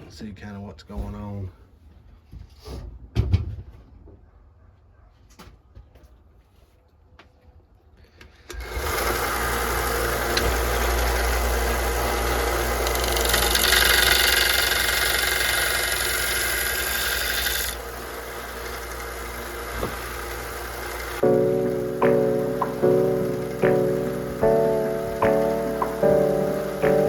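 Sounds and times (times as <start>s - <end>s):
steel grinding against belt: 8.5s - 21.2s
belt grinder motor humming: 8.5s - 21.8s, 22.4s - 27.0s.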